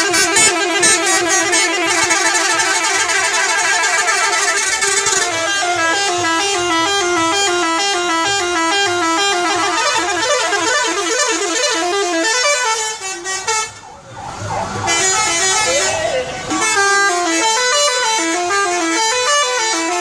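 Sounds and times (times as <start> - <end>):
bus horns playing a tune: 0.0 - 14.0, 14.8 - 20.0.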